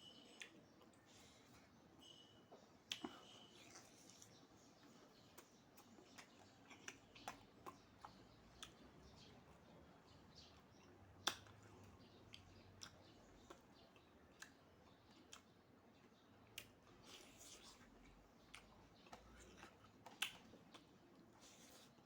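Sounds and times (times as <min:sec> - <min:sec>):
person chewing and crunching: 0:02.9 - 0:08.9, 0:10.8 - 0:22.0.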